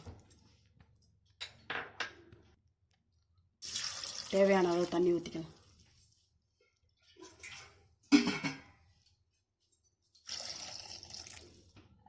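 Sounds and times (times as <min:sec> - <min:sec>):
water poured into pressure cooker: 0:03.6 - 0:05.6, 0:10.2 - 0:11.7.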